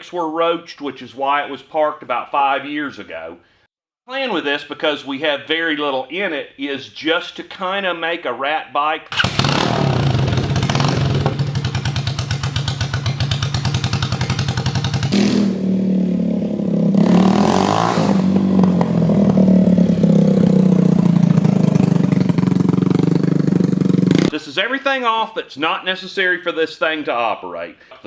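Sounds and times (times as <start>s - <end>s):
motorcycle engine running: 9.2s - 24.3s.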